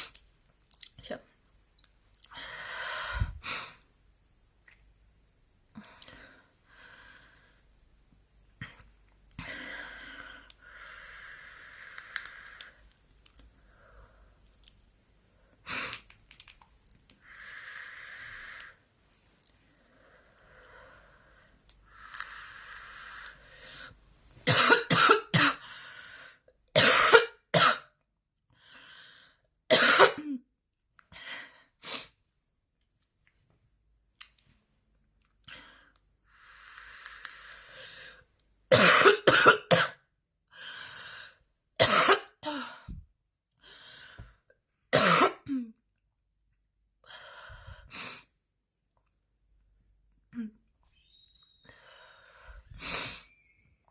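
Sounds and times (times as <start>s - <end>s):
woman coughing: 24.5s - 25.6s, 29.7s - 30.4s, 38.7s - 40.0s, 41.8s - 42.6s, 45.0s - 45.7s.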